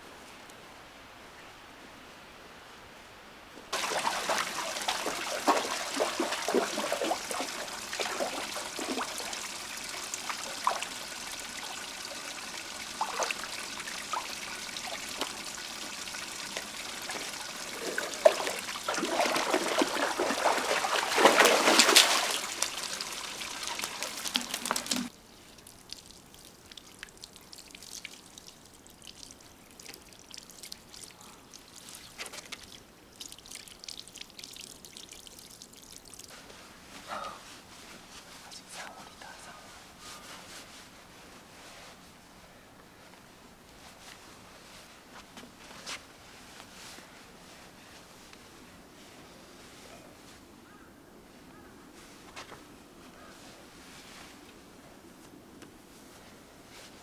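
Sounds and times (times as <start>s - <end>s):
water pouring: 3.7s - 36.3s.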